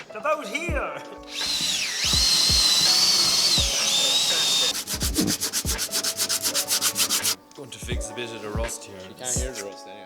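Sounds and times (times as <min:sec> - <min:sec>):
power sander whining: 0:01.3 - 0:07.4
rhythmic sanding rasp: 0:01.3 - 0:07.4.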